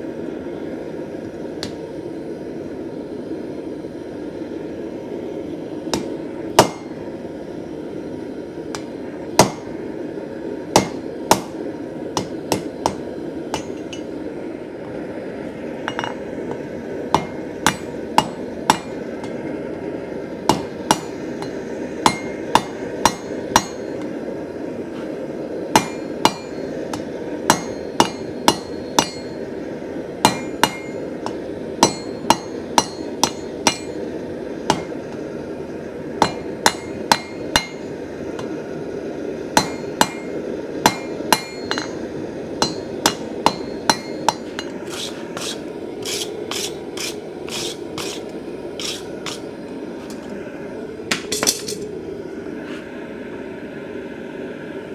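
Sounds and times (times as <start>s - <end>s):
hammer striking steel on anvil: 5.9s - 7.0s, 8.7s - 9.9s, 10.7s - 14.2s, 15.8s - 19.7s, 20.5s - 24.3s, 25.7s - 35.4s, 36.2s - 38.8s, 39.6s - 49.5s, 51.1s - 51.9s.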